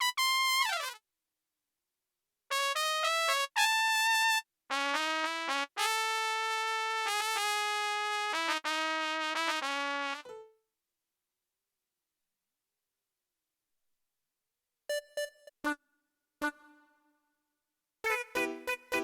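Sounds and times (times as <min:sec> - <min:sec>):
keyboard trumpet melody: 0:02.5 - 0:10.5, 0:18.0 - 0:19.0.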